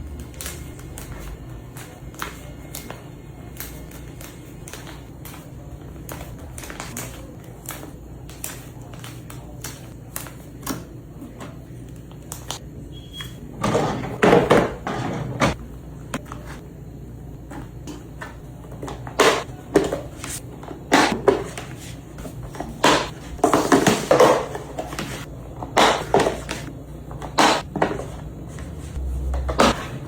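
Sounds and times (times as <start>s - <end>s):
objects knocking and clattering: 13.6s - 16.6s, 22.4s - 28.6s.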